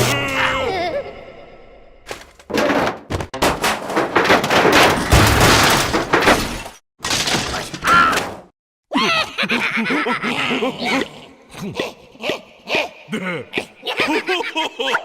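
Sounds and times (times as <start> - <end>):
noisy crackling and crashing: 2.3 - 7.5.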